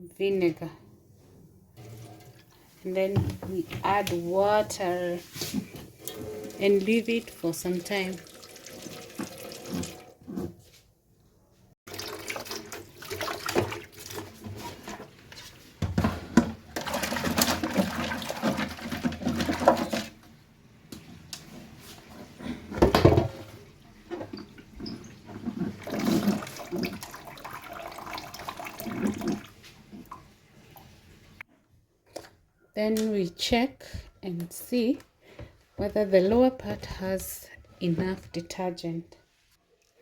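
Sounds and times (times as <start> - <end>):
water running and splashing: 6.0 - 10.1, 11.9 - 14.5, 24.4 - 30.2.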